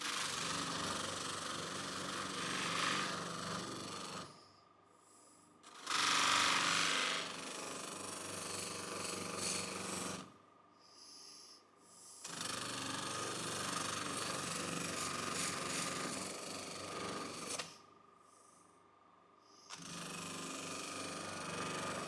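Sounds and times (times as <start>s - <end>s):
noisy tool work: 0.0s - 4.5s, 5.6s - 10.3s, 12.2s - 17.8s, 19.6s - 22.0s.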